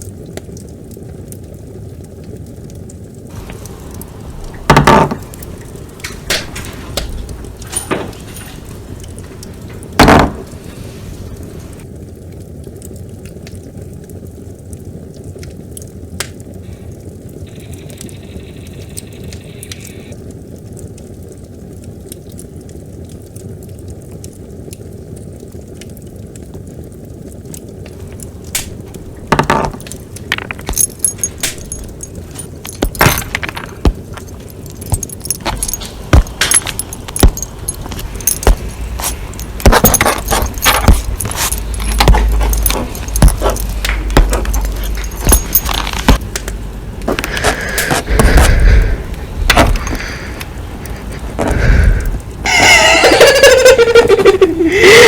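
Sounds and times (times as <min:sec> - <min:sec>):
metallic clinks and jingling: 0:05.2 - 0:11.8, 0:28.8 - 0:46.2.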